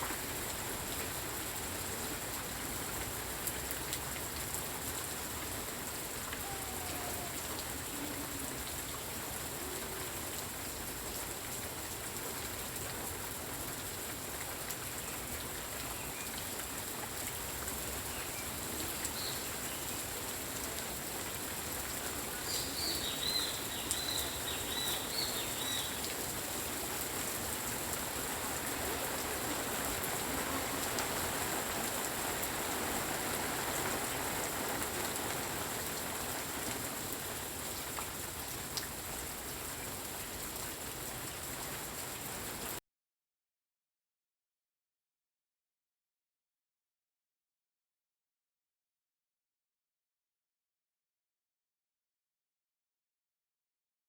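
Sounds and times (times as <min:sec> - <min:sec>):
rain pattering: 0:00.0 - 0:42.8.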